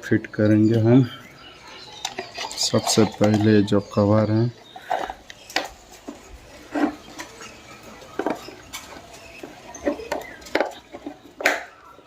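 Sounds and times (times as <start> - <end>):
fan parts clicking and knocking: 2.0 - 7.4, 8.1 - 11.8.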